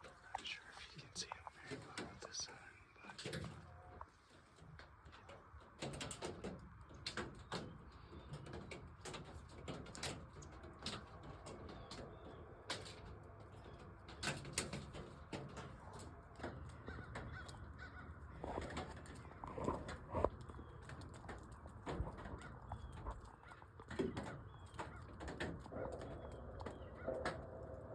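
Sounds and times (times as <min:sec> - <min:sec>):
crows cawing: 0:16.8 - 0:18.5.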